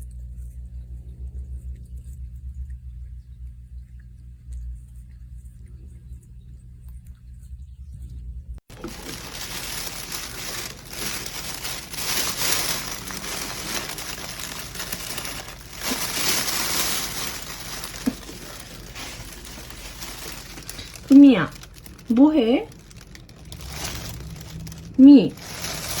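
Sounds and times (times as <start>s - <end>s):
crinkling rustling: 8.7s - 26.0s.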